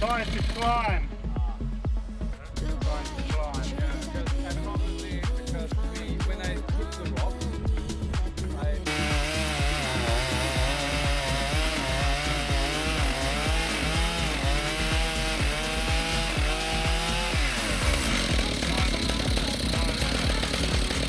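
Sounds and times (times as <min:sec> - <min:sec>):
chainsaw cutting log: 0:00.0 - 0:01.0, 0:08.8 - 0:21.0
background music with beat: 0:00.0 - 0:21.0.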